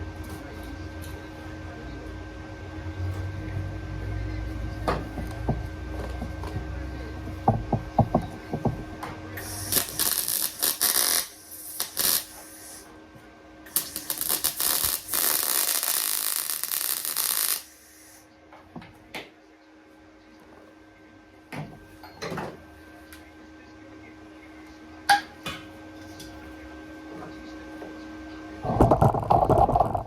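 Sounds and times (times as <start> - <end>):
harsh crackling hiss: 9.4 - 12.9, 13.7 - 18.2.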